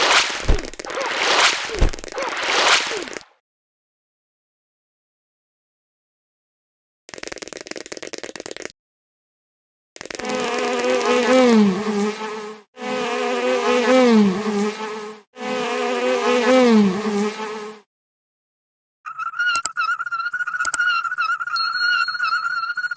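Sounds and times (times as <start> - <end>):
bee buzzing: 10.2 - 17.8.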